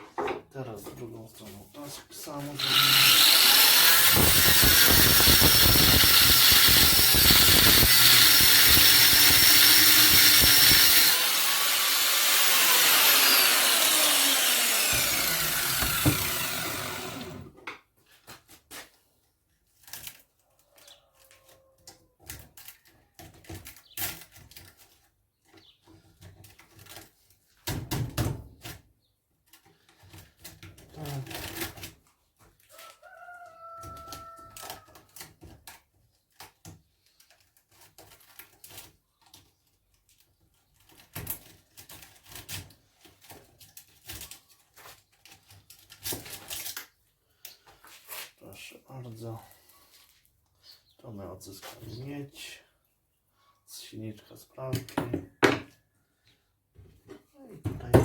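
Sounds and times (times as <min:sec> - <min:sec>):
power tool cutting metal: 0:02.5 - 0:17.5.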